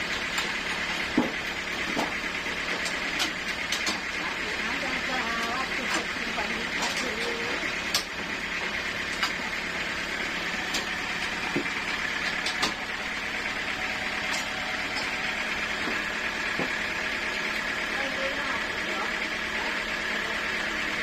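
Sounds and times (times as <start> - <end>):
sawmill saw running: 0.0 - 21.0
sharp clicks and knocks: 0.1 - 4.2, 5.4 - 9.5, 10.6 - 13.0.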